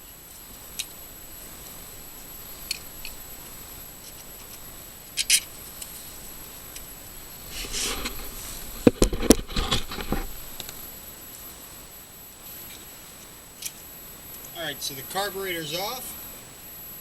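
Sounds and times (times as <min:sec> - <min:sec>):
metal scrape: 0:07.5 - 0:10.4.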